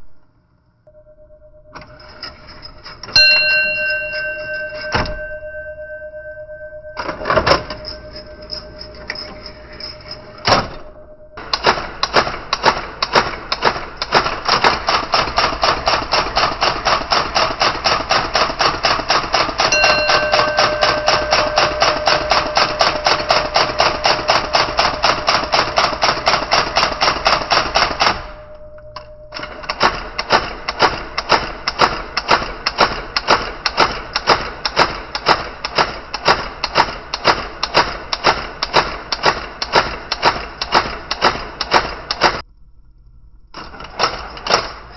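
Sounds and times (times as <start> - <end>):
typewriter motor humming: 11.4 - 19.8, 20.6 - 28.3
electric typewriter typing: 11.4 - 28.4, 29.3 - 42.4, 43.6 - 44.9.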